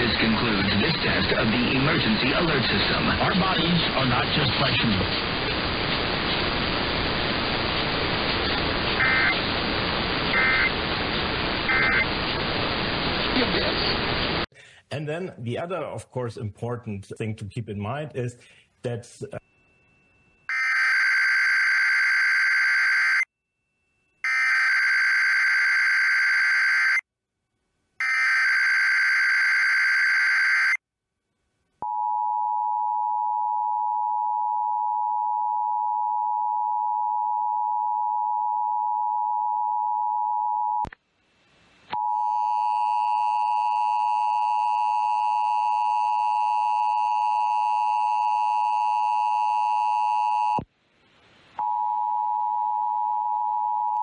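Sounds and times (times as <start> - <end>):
digital header data bursts: 8.4 - 14.4.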